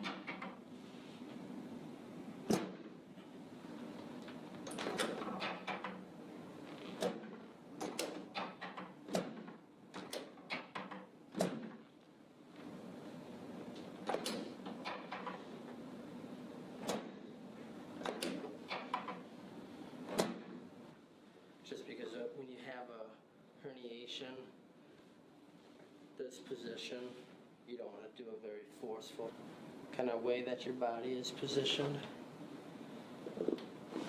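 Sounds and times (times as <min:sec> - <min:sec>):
sharp clacks and knocks: 0:06.9 - 0:11.8.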